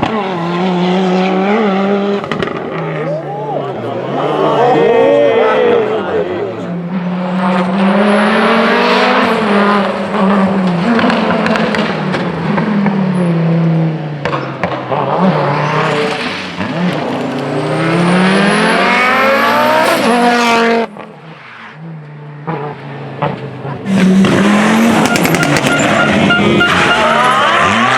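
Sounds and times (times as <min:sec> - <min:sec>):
rally car engine revving: 0:00.0 - 0:27.9.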